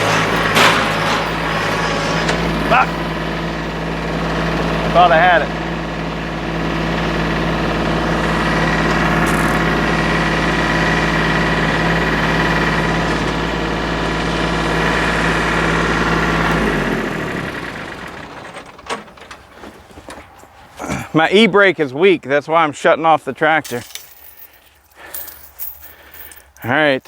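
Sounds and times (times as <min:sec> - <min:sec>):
tractor engine running: 0:00.0 - 0:21.4.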